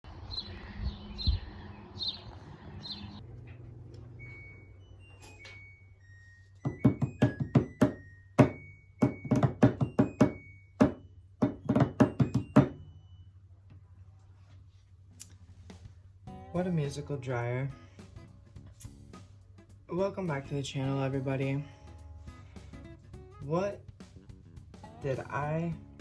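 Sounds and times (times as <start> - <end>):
clothes dryer humming: 2.5 - 10.5.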